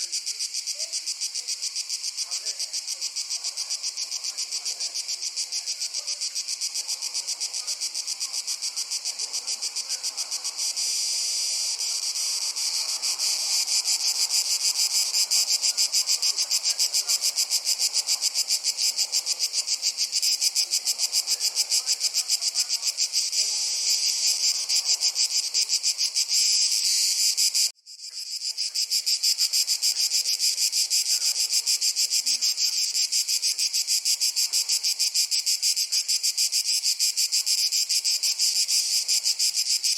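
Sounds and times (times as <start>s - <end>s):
crickets chirping: 0.0s - 39.9s.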